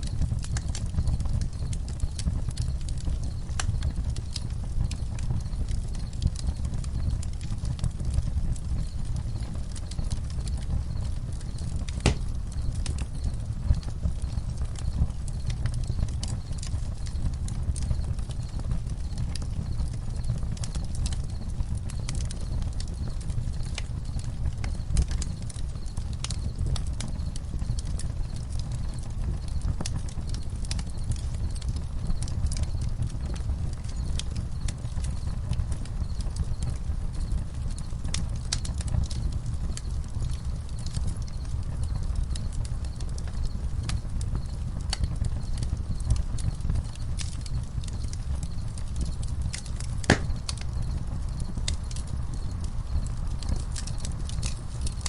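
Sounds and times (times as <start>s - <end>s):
campfire crackling and popping: 0.0s - 55.0s
crickets chirping: 30.4s - 37.9s, 38.6s - 55.0s.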